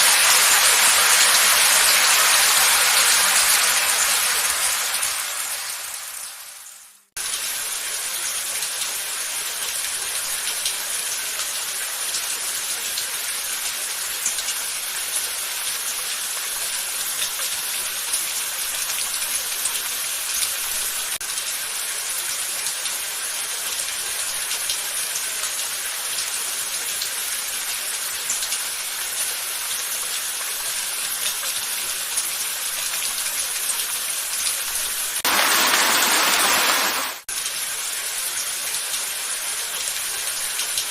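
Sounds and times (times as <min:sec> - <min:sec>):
steady rain falling: 0:00.0 - 0:40.9.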